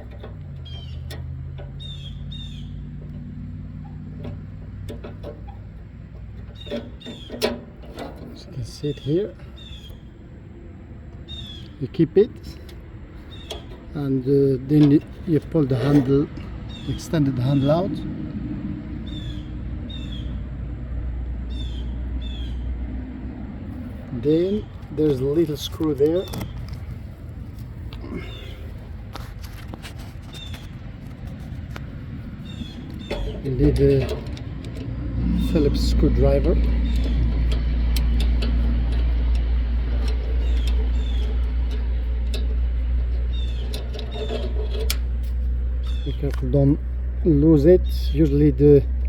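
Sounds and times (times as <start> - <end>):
light metal clicks: 0.0 - 10.1, 11.1 - 18.1, 23.8 - 49.0
steady low hum: 0.0 - 49.0
steady low rumble: 0.0 - 49.0
bird chirping: 0.5 - 3.2, 6.4 - 7.6, 8.4 - 10.3, 11.2 - 18.0, 19.0 - 20.4, 21.5 - 22.7, 28.0 - 28.8, 30.2 - 30.8, 32.3 - 48.5
short high squeaks: 5.1 - 10.1, 28.0 - 46.3.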